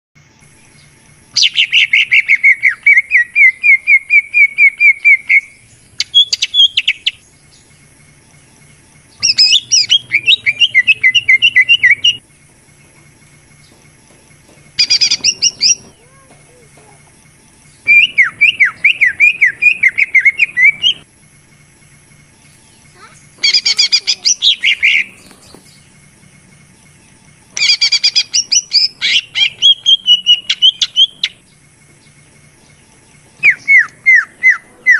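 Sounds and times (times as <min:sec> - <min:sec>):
bird singing rapid whistled notes: 0:00.2 - 0:12.3, 0:14.6 - 0:21.1, 0:21.9 - 0:34.9.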